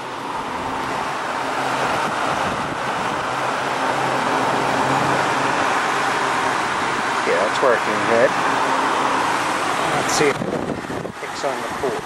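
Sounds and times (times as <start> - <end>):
air conditioner fan rushing air: 0.0 - 12.0.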